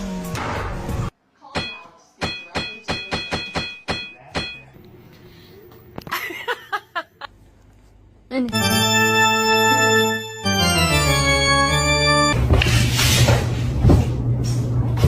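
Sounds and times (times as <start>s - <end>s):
sharp ringing knocks: 1.6s - 4.7s.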